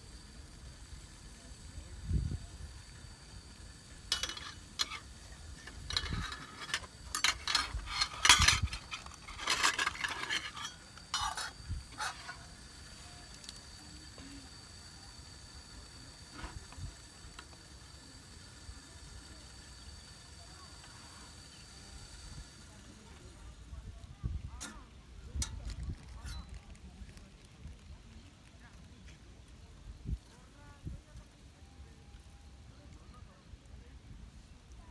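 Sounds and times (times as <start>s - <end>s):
cookware clattering: 4.1s - 12.5s.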